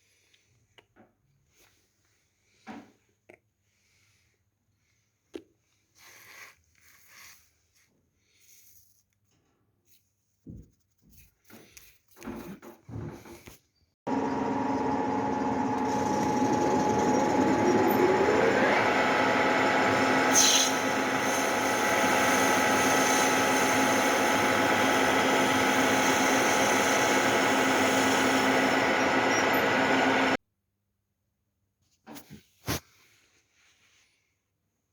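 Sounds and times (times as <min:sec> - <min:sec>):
electric motor humming and whining: 0:14.1 - 0:30.4.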